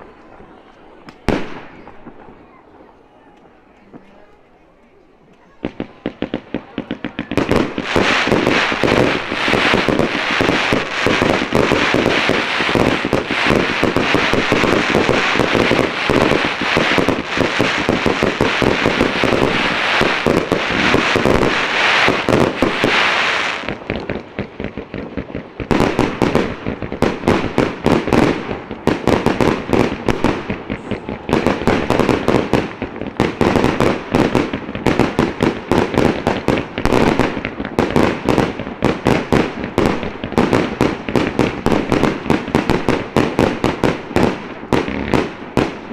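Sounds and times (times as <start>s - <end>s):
firework crackling: 0.0s - 45.9s
firework shells bursting: 5.4s - 24.1s.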